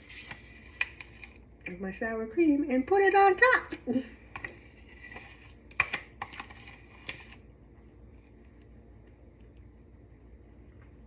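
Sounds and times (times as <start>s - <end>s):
spoon scraping plastic tub: 0.0s - 1.4s, 4.1s - 7.4s.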